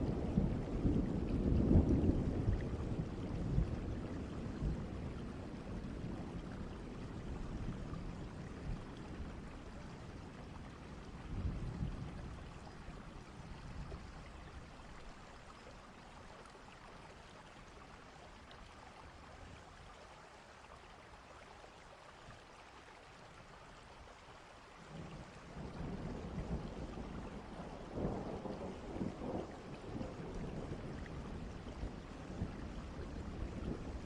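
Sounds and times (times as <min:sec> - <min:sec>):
low thunder rumble: 0:00.0 - 0:15.2, 0:24.9 - 0:34.0
heavy rain: 0:00.0 - 0:34.0.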